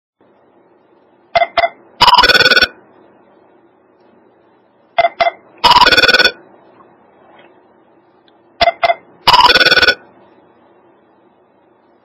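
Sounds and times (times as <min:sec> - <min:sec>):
cell phone ringtone beeps: 0:01.4 - 0:02.8, 0:05.0 - 0:06.4, 0:08.6 - 0:10.1.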